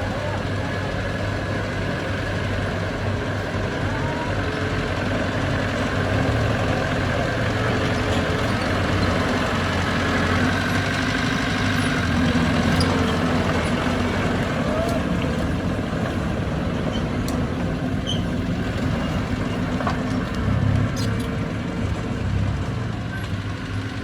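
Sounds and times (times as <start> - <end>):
heavy diesel engine droning: 0.0 - 24.0.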